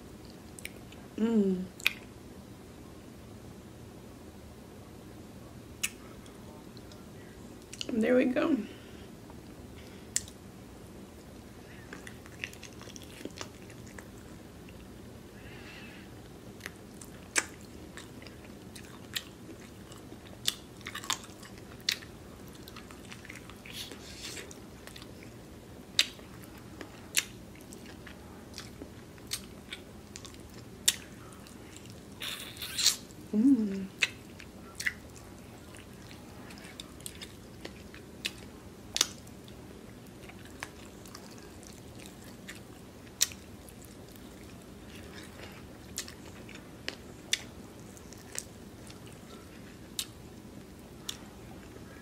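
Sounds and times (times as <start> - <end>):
person humming: 1.2 - 1.7, 33.3 - 34.0
person chewing: 11.8 - 14.9, 16.6 - 25.4, 26.0 - 33.0, 33.6 - 50.2, 51.0 - 52.0.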